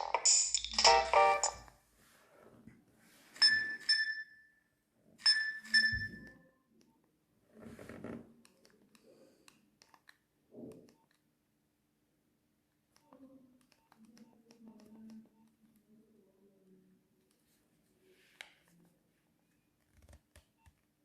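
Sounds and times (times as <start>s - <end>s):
phone chiming beeps: 0.8s - 1.6s, 3.4s - 4.4s, 5.3s - 6.5s.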